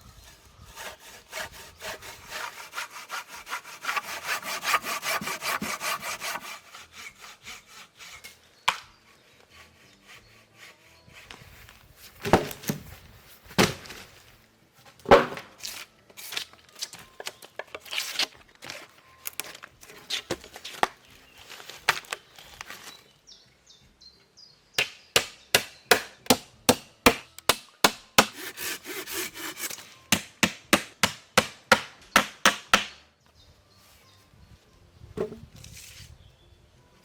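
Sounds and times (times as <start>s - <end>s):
hand saw cutting wood: 0.2s - 11.5s, 28.2s - 30.6s.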